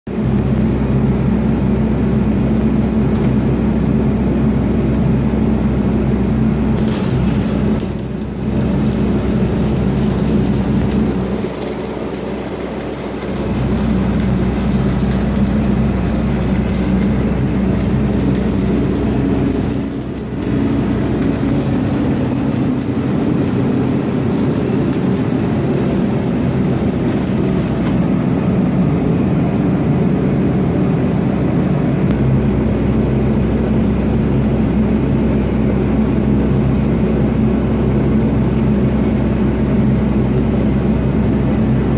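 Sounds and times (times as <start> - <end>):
welder engine humming: 0.2 - 41.9
welding arc crackling and hissing: 6.4 - 28.3.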